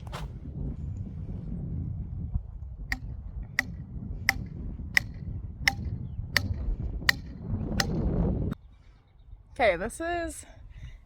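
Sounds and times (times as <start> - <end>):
sharp ticks: 2.9 - 8.0.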